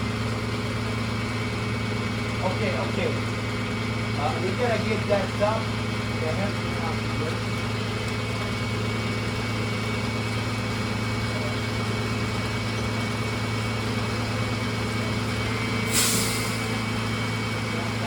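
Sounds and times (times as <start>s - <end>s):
diesel engine idling: 0.0s - 18.0s
air brakes hissing: 15.6s - 17.1s.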